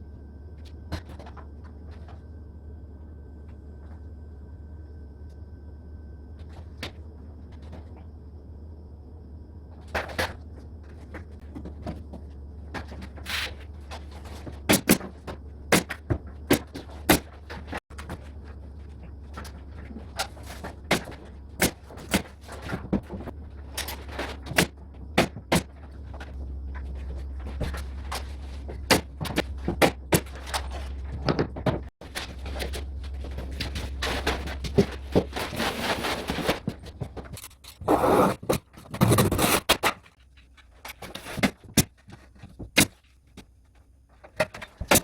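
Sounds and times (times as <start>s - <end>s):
steady low hum: 0.0s - 45.0s
rasping scrape: 32.2s - 40.1s.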